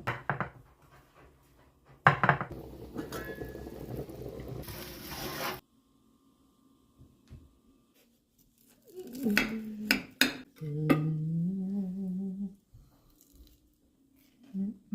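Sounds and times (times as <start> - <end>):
person humming: 8.8 - 12.7, 14.4 - 14.9.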